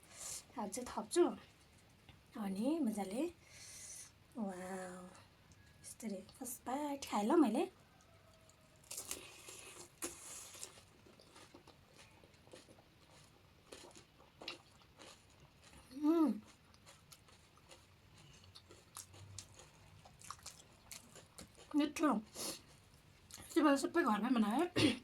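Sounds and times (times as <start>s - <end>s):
crisp shells crunching in mouth: 8.8s - 21.8s.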